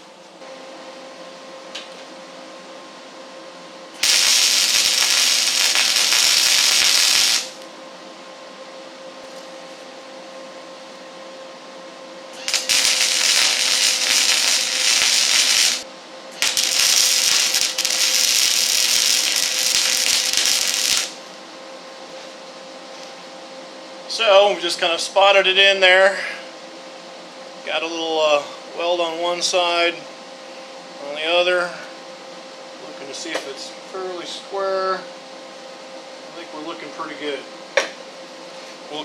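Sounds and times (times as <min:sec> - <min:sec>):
arc welder crackling hiss: 0:03.9 - 0:07.7, 0:12.3 - 0:21.4.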